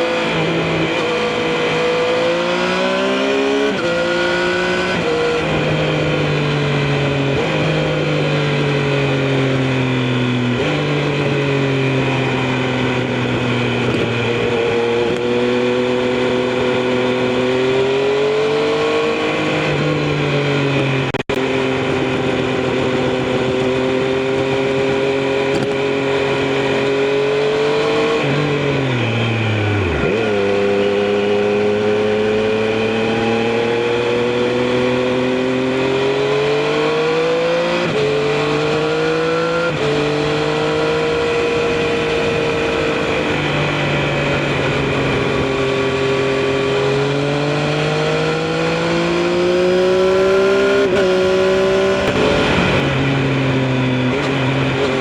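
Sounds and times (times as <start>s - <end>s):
motorcycle engine running: 39.6s - 55.0s.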